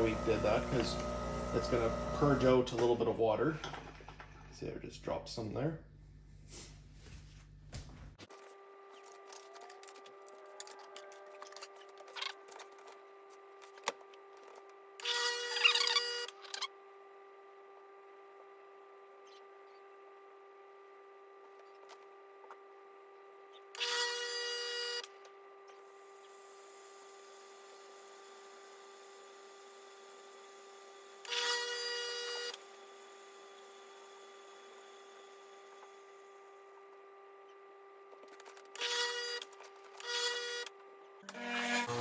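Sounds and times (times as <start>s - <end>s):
espresso machine pump buzzing: 0.0s - 4.0s, 25.7s - 37.1s
faint steady hum: 0.0s - 42.0s.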